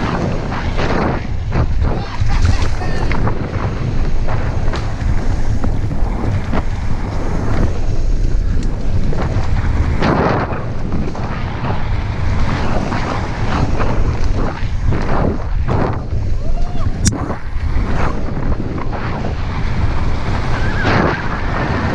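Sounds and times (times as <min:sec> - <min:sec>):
bike knocking over bumps: 0:00.0 - 0:16.2
mountain bike rumbling and rattling: 0:00.0 - 0:21.9
wind buffeting microphone: 0:00.0 - 0:21.9.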